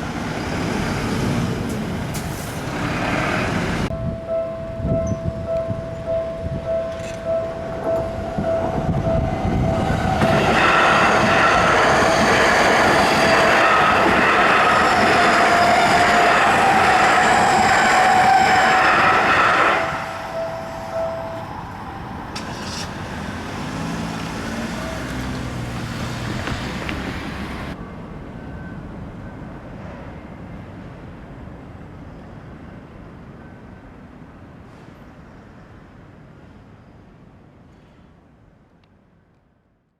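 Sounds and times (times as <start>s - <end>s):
road traffic: 0.0s - 36.4s
train passing: 0.0s - 36.6s.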